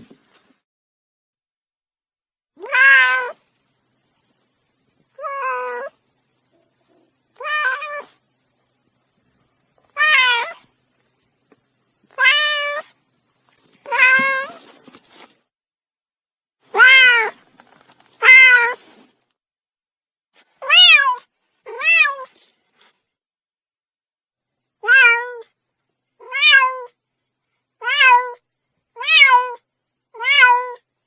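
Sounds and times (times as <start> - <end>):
kitten meowing: 10.0 - 10.6, 16.7 - 17.4, 18.2 - 18.8.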